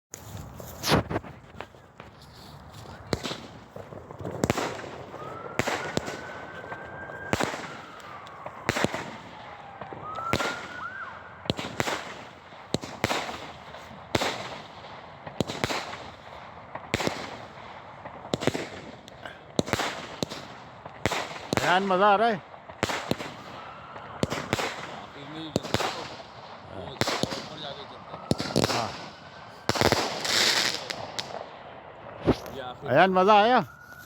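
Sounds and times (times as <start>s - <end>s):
firework bangs: 0.6s - 2.2s, 2.8s - 33.9s
whistling firework: 2.4s - 34.0s.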